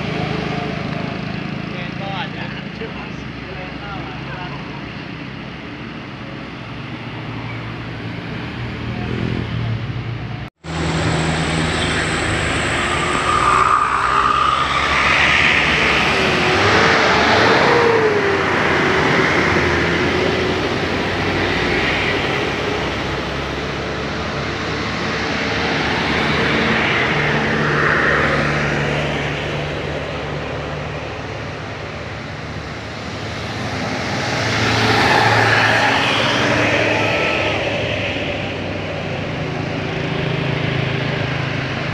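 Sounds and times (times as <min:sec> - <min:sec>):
bus engines running: 0:00.0 - 0:41.9.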